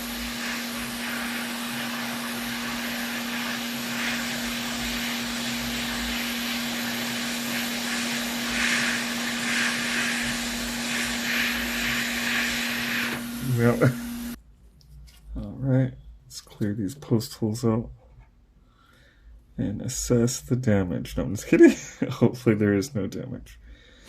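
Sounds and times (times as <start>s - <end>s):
hot air station blowing: 0.0s - 14.4s.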